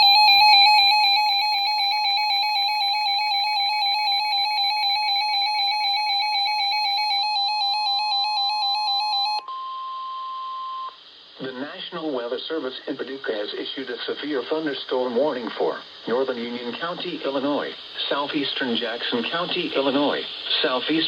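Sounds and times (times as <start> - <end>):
steady high tone: 0.0 - 9.7.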